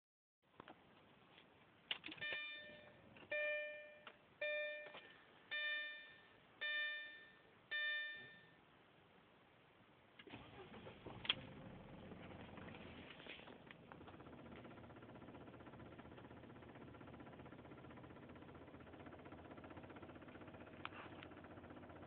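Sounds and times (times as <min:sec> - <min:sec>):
dashboard warning chime: 0:02.2 - 0:08.6.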